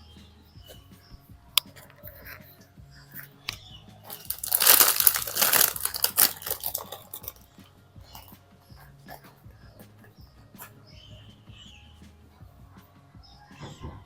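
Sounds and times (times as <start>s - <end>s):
close crinkling and rustling: 4.1s - 7.5s.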